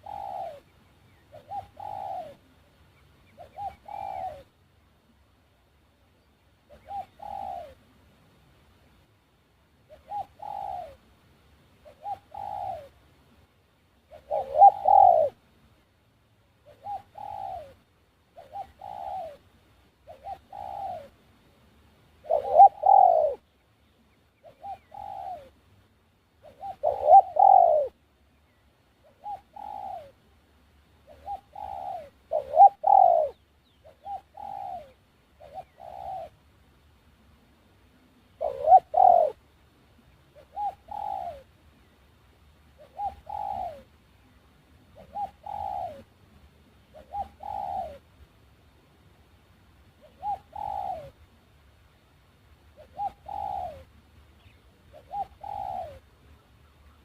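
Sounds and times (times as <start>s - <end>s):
dove cooing: 0.0s - 4.6s, 6.6s - 8.0s, 9.8s - 11.1s, 11.8s - 13.0s, 14.0s - 15.4s, 16.6s - 21.2s, 22.2s - 23.5s, 24.4s - 25.6s, 26.4s - 28.0s, 29.0s - 30.3s, 31.0s - 36.4s, 37.9s - 39.4s, 40.3s - 41.6s, 42.7s - 44.0s, 44.8s - 46.2s, 46.8s - 48.1s, 49.9s - 51.3s, 52.7s - 57.0s.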